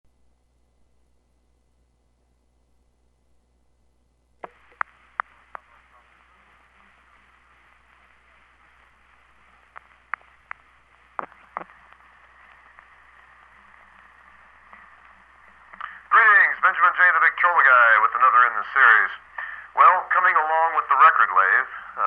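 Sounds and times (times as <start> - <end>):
muffled surface hiss: 0.1 - 22.0
record clicks and pops: 4.4 - 17.4.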